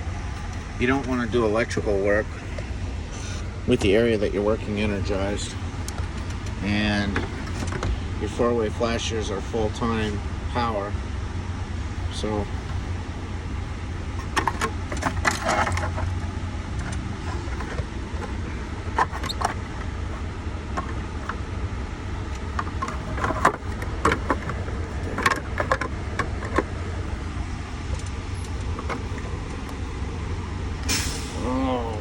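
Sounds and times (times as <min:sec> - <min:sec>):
steady low hum: 0:00.0 - 0:32.0
plastic and metal rattles: 0:05.8 - 0:08.0, 0:14.1 - 0:21.5, 0:22.3 - 0:26.9, 0:27.8 - 0:29.8.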